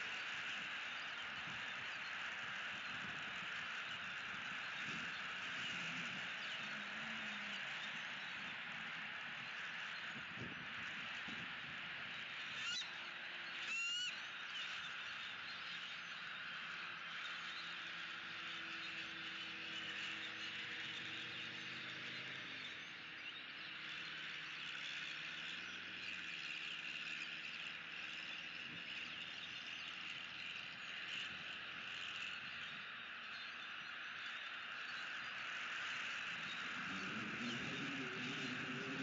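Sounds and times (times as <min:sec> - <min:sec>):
frogs calling: 0:00.0 - 0:39.0
insects chirring: 0:30.6 - 0:39.0
faint low drone: 0:36.0 - 0:39.0.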